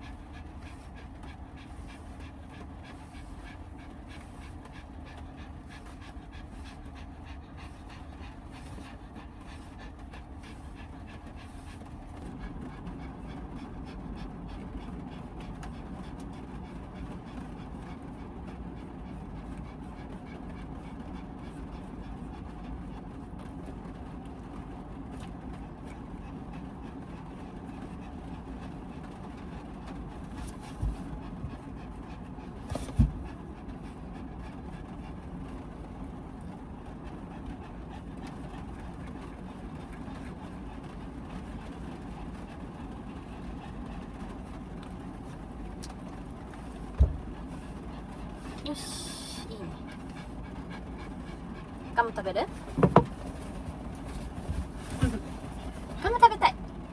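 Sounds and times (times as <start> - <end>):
dog panting: 0.0 - 56.9
heavy rain on a van: 33.5 - 52.6.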